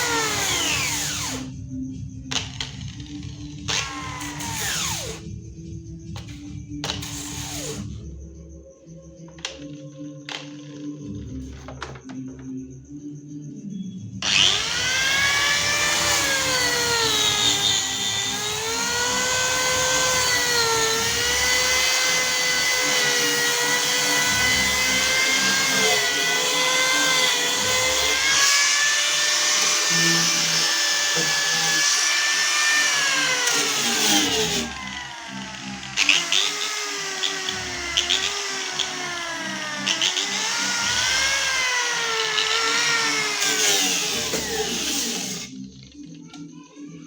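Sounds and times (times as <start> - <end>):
power tool whining on wood: 0.0 - 1.5, 2.3 - 5.3, 6.2 - 8.0, 14.2 - 45.7
background music: 0.0 - 47.0.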